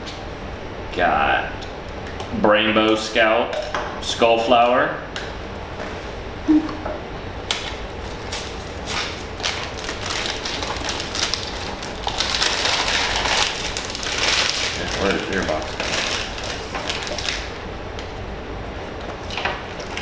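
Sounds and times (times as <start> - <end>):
packaging rustling: 8.1 - 17.5.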